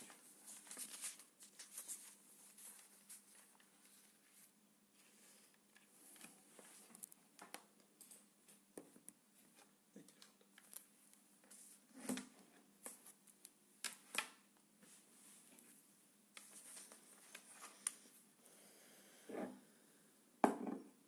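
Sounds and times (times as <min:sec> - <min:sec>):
small clicks and rustles: 0:00.1 - 0:12.2.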